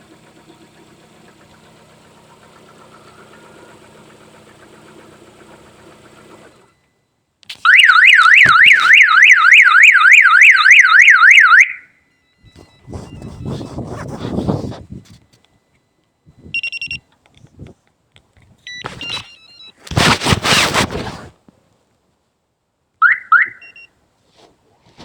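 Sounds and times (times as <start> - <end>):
car engine idling: 0.0 - 6.9
car alarm siren: 7.6 - 13.6, 23.0 - 23.8.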